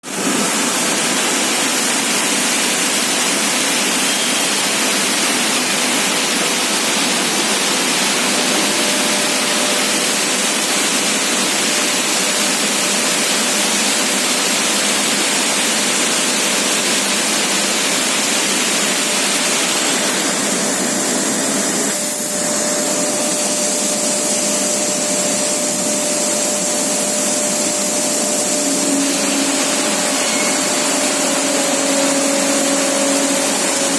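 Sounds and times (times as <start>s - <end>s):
grinding machine hissing: 0.0s - 33.9s
faint machine whining tones: 27.0s - 33.9s.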